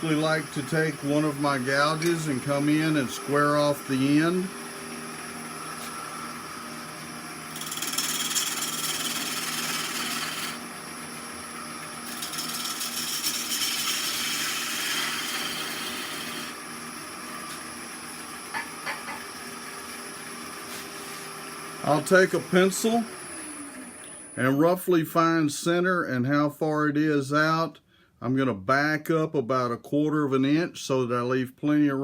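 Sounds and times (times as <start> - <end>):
gouge cutting wood on a lathe: 0.0 - 10.8, 11.8 - 16.6
lathe motor hum: 0.0 - 24.4.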